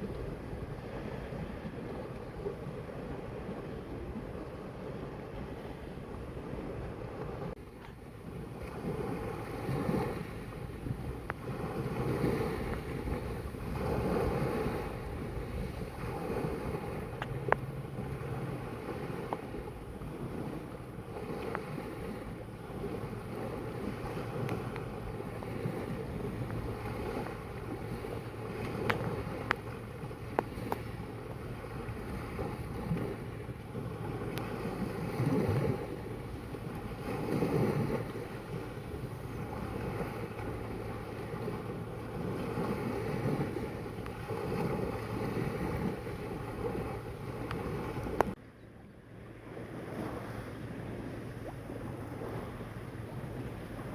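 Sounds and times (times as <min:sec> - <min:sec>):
sea waves washing in: 0:00.0 - 0:48.4, 0:49.0 - 0:53.9
wind buffeting microphone: 0:00.0 - 0:48.4.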